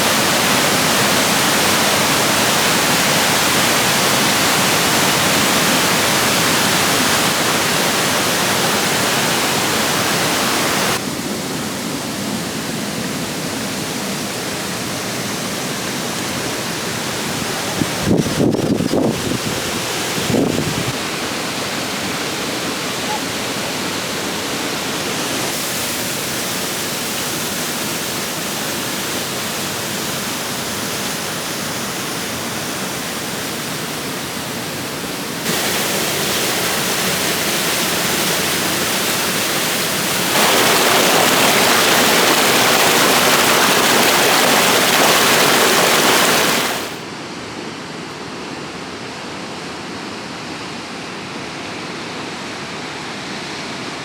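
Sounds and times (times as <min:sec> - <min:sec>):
waterfall rushing: 0:00.0 - 0:11.4, 0:35.3 - 0:47.0.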